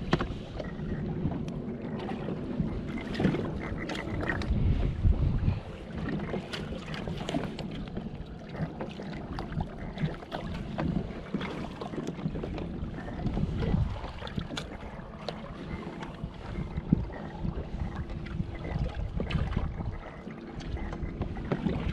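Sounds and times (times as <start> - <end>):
water slapping against hull: 0.0 - 21.9
wind rumble on microphone: 0.0 - 21.9.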